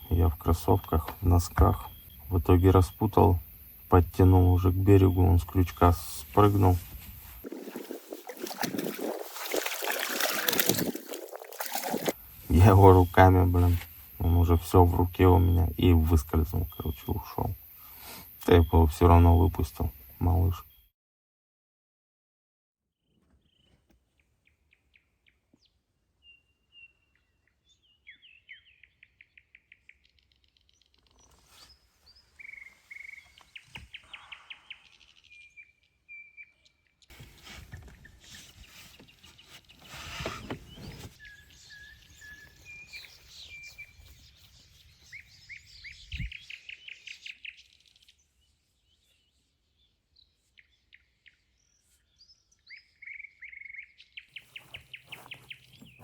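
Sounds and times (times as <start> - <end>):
small birds singing: 0.0 - 20.9, 23.0 - 56.0
wind noise on microphone: 45.9 - 46.4.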